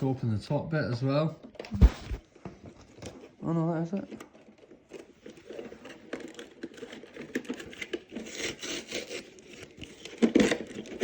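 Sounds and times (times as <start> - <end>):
toy packaging crinkling: 4.3 - 11.0.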